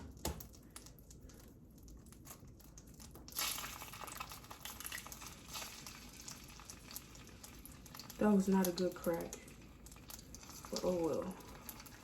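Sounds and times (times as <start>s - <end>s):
egg sizzling in frying pan: 0.1s - 12.0s.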